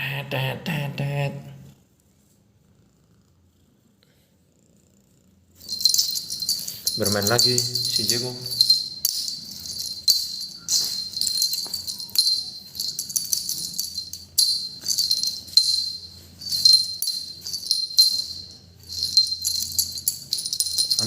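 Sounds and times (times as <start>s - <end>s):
cat collar bell jingling: 5.6s - 21.0s.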